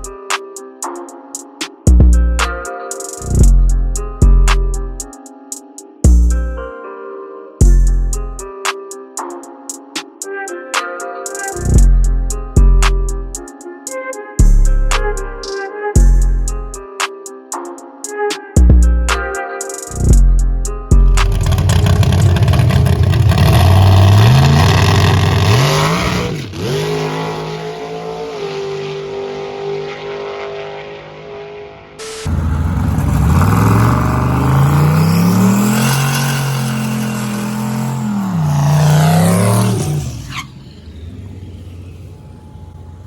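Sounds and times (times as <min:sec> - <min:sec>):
race car engines at full throttle: 0:21.1 - 0:43.0.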